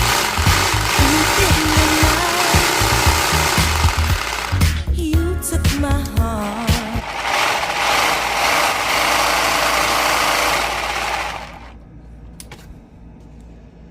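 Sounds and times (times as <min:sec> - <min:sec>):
model engine clattering: 0:00.0 - 0:04.7.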